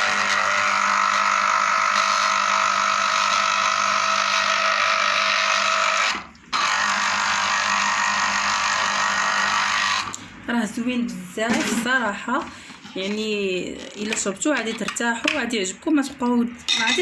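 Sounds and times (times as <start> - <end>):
electric blender motor grinding: 0.0 - 10.2.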